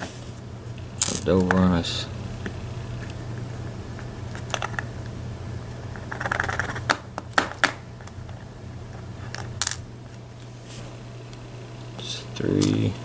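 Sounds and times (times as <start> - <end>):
lock pins rattling: 1.0 - 1.8, 9.3 - 9.9.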